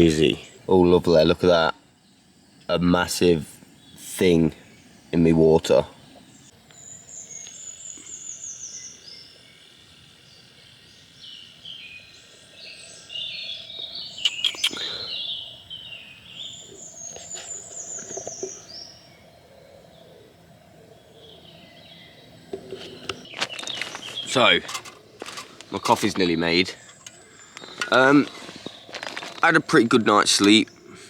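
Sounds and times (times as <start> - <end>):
birds chirping: 0.0 - 31.0
bird singing falling phrase: 10.3 - 20.3, 20.9 - 31.0.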